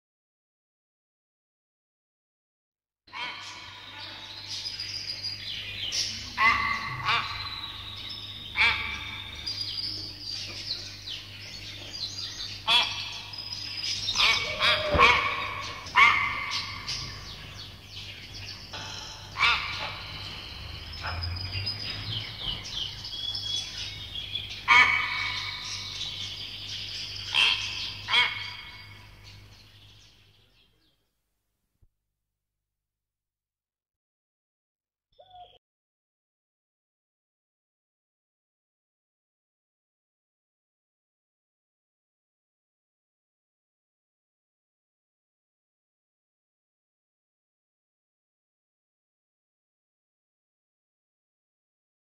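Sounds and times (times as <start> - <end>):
birds calling harshly: 3.1 - 31.0, 35.2 - 35.6.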